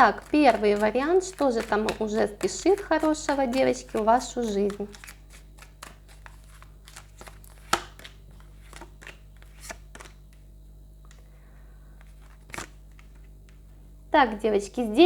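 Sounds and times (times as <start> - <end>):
steady low hum: 0.0 - 15.0
card snap: 0.2 - 10.2, 12.2 - 13.6
cards tapping on a table: 0.2 - 10.2.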